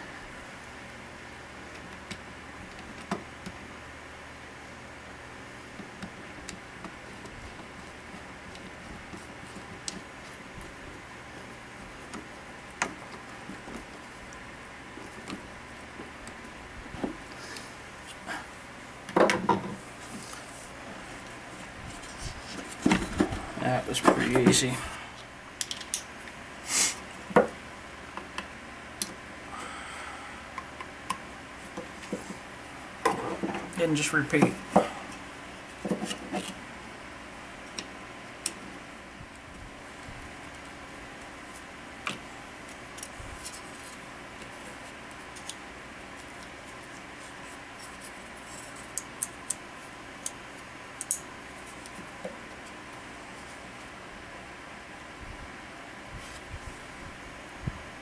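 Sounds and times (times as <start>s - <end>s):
steady background hiss: 0.0s - 58.0s.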